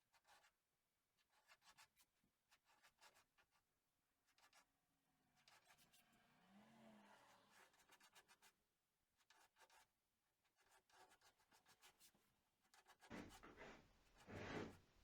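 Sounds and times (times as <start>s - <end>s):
tool scraping epoxy: 13.1s - 14.9s.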